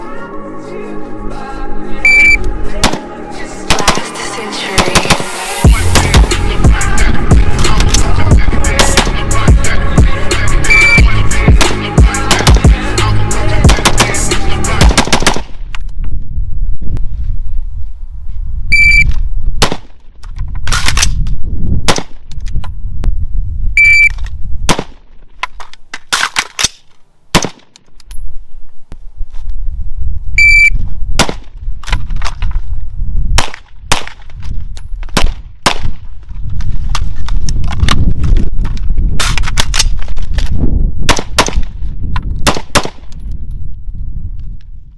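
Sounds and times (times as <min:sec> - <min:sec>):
short high electronic beeps: 0:02.0 - 0:02.4, 0:10.6 - 0:11.1, 0:18.7 - 0:19.1, 0:23.8 - 0:24.1, 0:30.4 - 0:30.8
rifle shots: 0:03.7 - 0:05.4, 0:14.8 - 0:15.6, 0:27.3 - 0:27.7, 0:42.4 - 0:43.0.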